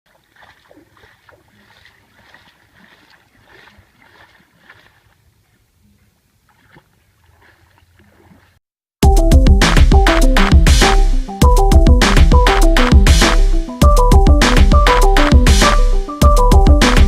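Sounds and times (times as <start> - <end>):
paddle splashes: 0.1 - 8.6.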